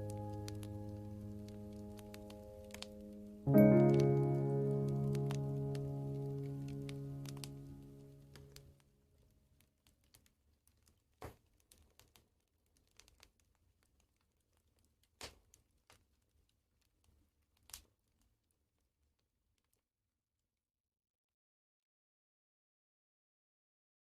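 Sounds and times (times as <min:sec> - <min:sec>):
piano notes: 0:00.0 - 0:08.7
wood fire crackling: 0:00.0 - 0:19.1.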